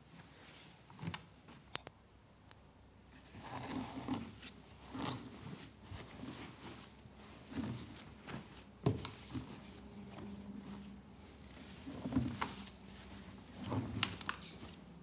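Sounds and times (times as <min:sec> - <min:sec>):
fabric rustling: 0:03.5 - 0:15.0.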